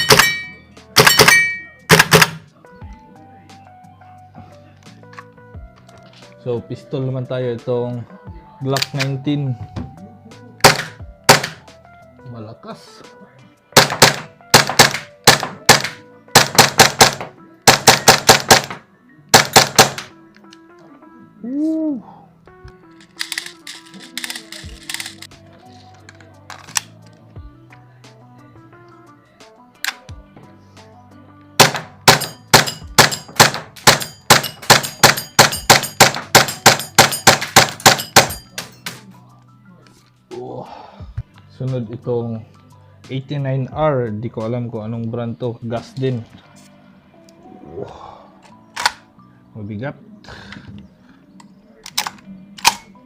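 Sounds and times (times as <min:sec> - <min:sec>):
airsoft pistol shots: 0:00.0 - 0:02.4, 0:10.6 - 0:11.6, 0:13.8 - 0:20.1, 0:31.6 - 0:38.4.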